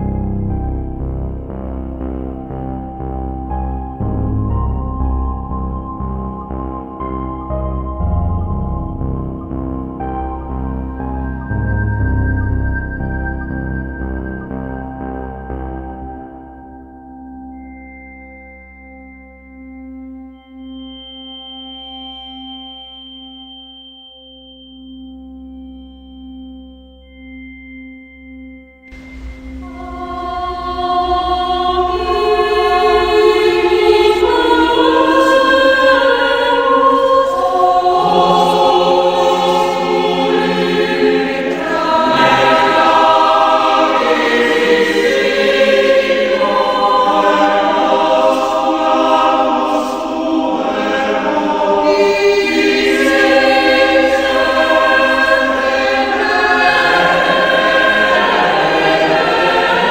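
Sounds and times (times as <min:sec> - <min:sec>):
choir singing slow chords: 0:00.0 - 0:21.0, 0:28.8 - 0:59.9.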